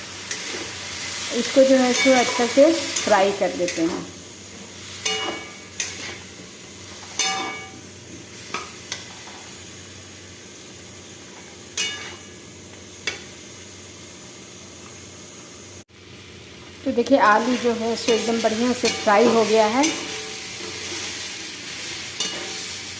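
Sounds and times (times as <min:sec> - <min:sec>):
potatoes sizzling in a frying pan: 0:00.0 - 0:22.9
spoon clinking against pan: 0:05.0 - 0:06.0, 0:07.2 - 0:07.8, 0:11.8 - 0:12.2.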